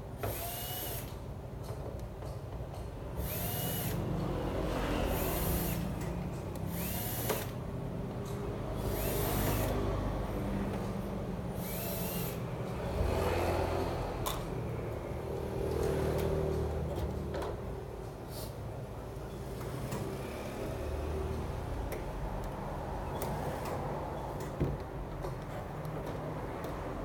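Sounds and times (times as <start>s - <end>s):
power screwdriver whirring: 0.2s - 1.2s, 3.2s - 4.0s, 5.1s - 5.8s, 6.7s - 7.6s, 8.8s - 9.8s, 11.6s - 12.4s.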